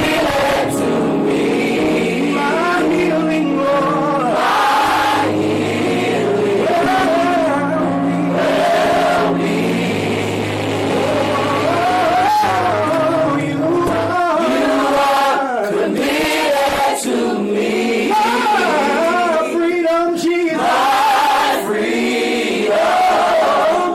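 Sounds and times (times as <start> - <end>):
choir singing: 0.0 - 19.7, 20.4 - 23.9
sustained low bass notes: 7.3 - 14.4.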